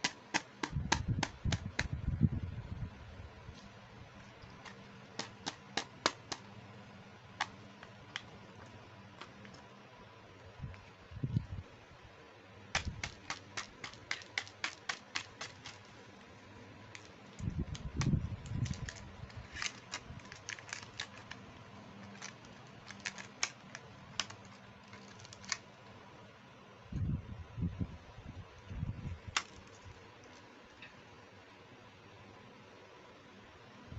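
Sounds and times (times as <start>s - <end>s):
sharp plastic clicks: 0.0s - 2.0s, 4.5s - 6.5s, 12.7s - 16.0s, 16.9s - 25.7s, 29.3s - 30.4s.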